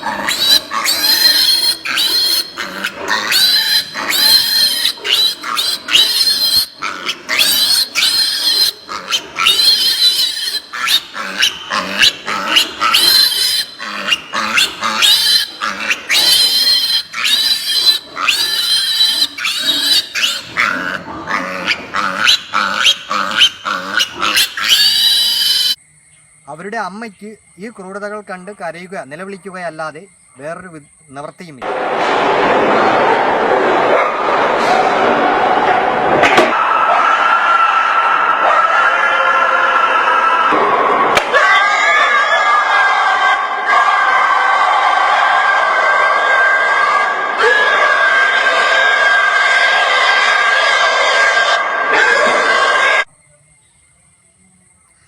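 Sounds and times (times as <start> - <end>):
piglets squealing: 0.0 - 25.8.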